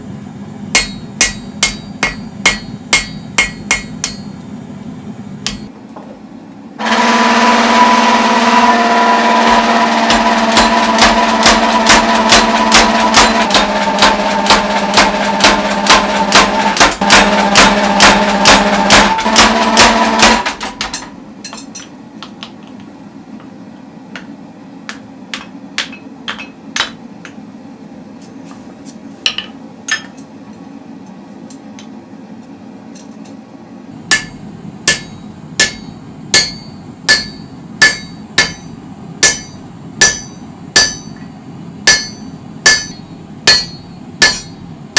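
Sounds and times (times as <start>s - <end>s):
steady motor running: 6.8s - 20.9s.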